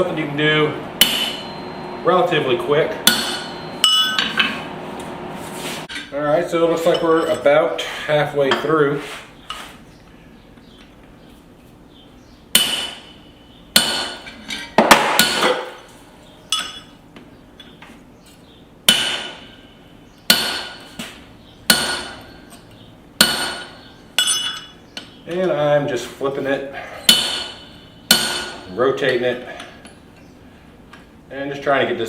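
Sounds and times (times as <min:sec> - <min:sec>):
hammer striking metal punch: 0:01.0 - 0:01.8, 0:03.0 - 0:04.5, 0:12.5 - 0:15.8, 0:18.9 - 0:21.0, 0:21.7 - 0:22.6, 0:23.2 - 0:25.1, 0:27.0 - 0:29.2.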